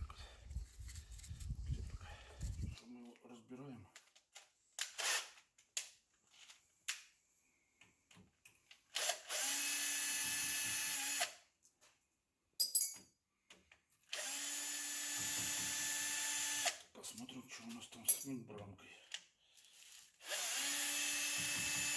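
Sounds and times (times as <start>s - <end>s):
cordless drill running: 9.0s - 11.4s, 14.1s - 16.8s, 20.2s - 21.9s.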